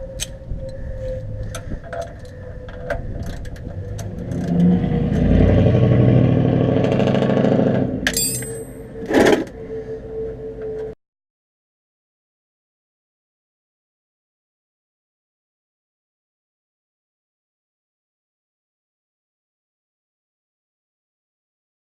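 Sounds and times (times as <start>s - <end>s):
vehicle engine running: 1.2s - 10.8s.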